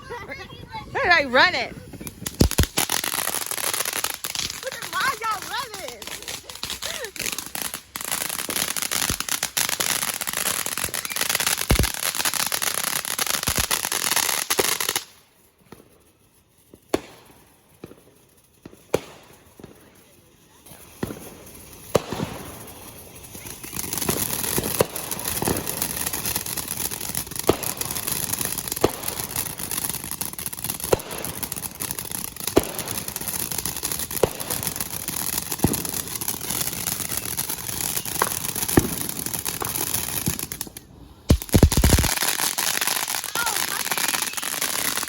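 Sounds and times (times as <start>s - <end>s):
fireworks crackling: 0.0s - 45.0s
fireworks pops: 1.8s - 3.4s, 8.4s - 9.3s, 10.8s - 12.1s, 35.5s - 42.6s.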